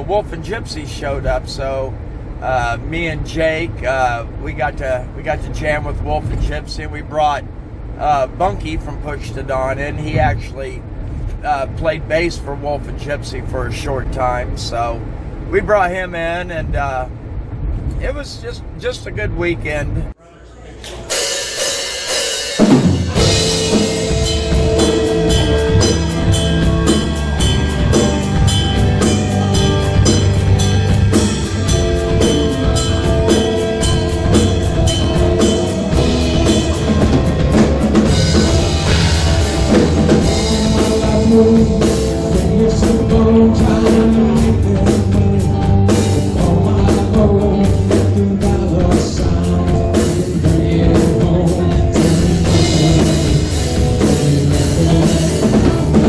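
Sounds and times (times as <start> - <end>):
cymbals struck: 20.9 - 42.6
rock band playing live: 21.0 - 56.0
bass drum: 22.5 - 56.0.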